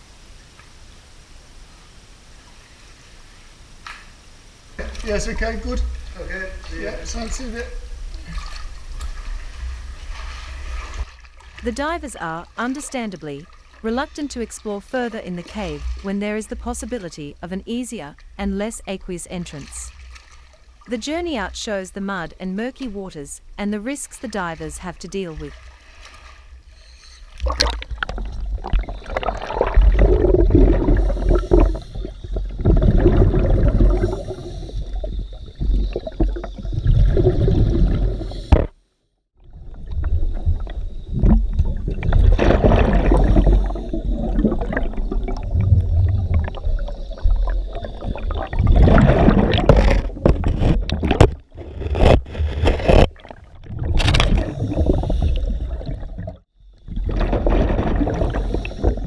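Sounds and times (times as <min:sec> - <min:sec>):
underwater gurgling and rumbling: 0:04.8 - 0:17.5, 0:25.4 - 0:38.8, 0:39.4 - 0:59.0.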